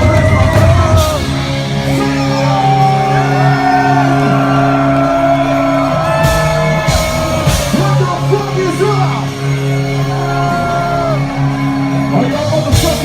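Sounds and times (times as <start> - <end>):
shouted vocals: 0.0 - 9.2
live rap-rock music: 0.0 - 13.0.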